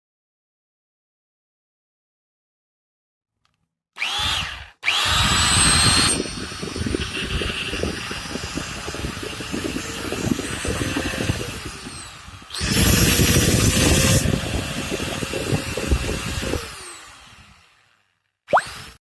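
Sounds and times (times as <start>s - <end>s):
angle grinder whining: 4.0s - 19.0s.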